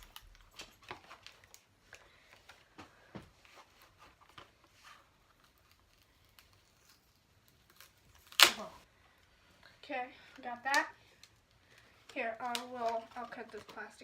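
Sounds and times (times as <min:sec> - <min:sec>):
packaging snapping or ripping: 0:00.0 - 0:01.7, 0:05.3 - 0:08.8
cardboard and plastic scrapes and clicks: 0:11.8 - 0:14.0.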